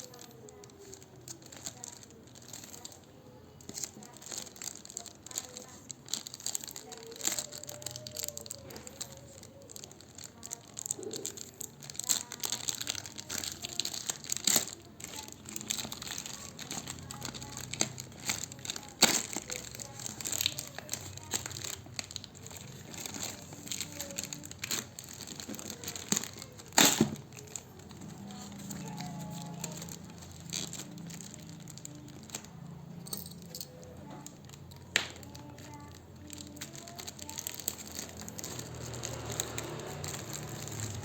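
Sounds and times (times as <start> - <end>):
plastic packaging crinkling: 0.0 - 41.0.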